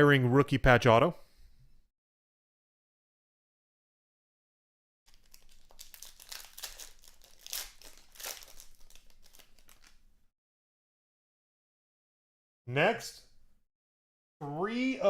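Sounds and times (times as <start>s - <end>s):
cards and packaging crinkling: 5.1s - 10.0s.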